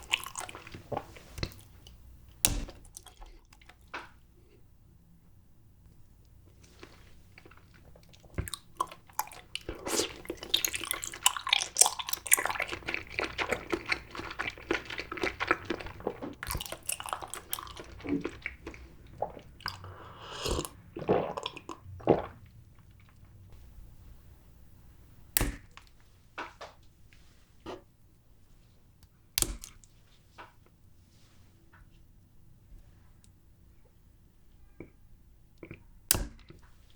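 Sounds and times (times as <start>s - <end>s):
wet chewing mouth clicks: 6.7s - 23.5s.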